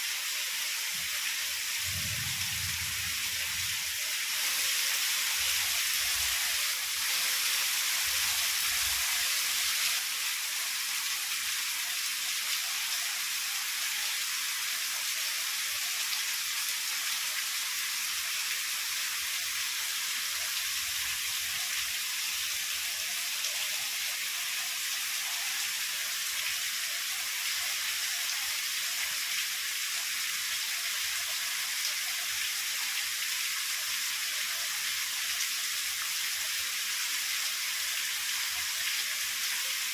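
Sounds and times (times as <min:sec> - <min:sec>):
heavy rain falling: 0:01.8 - 0:10.0.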